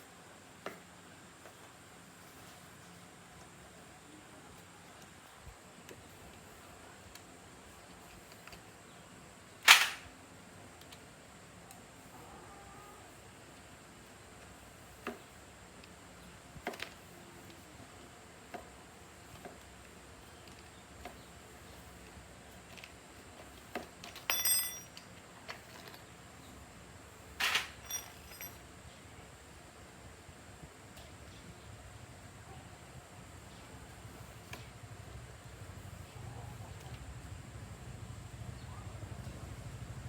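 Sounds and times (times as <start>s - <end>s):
metal parts and tools clicking: 24.0s - 26.1s, 27.4s - 28.6s
ringing metallic clinks: 24.3s - 25.0s, 27.7s - 28.6s.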